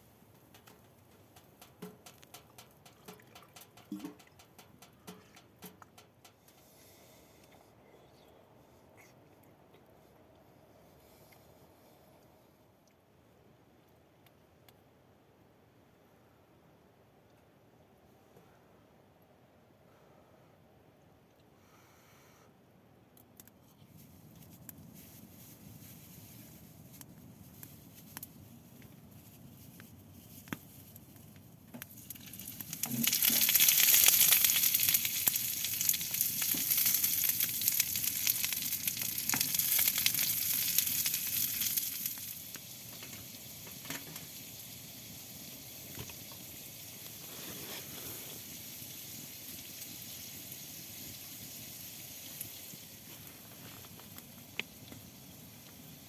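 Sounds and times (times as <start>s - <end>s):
meat sizzling in a pan: 31.9s - 56.0s.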